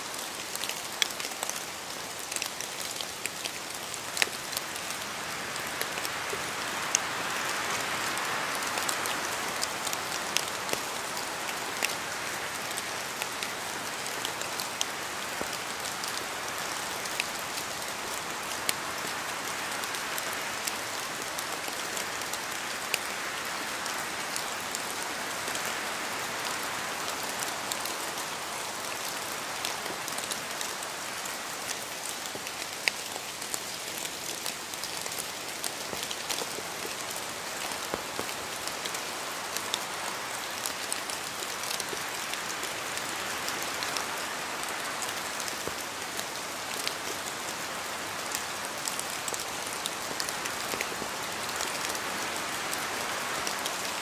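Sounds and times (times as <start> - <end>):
raindrops ticking on surface: 0.0 - 54.0
steady rain hiss: 0.0 - 54.0.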